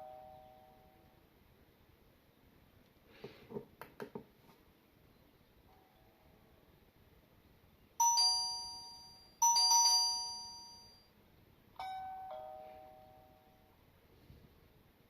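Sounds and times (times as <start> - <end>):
two-note doorbell chime: 8.0 - 11.1, 11.8 - 13.7.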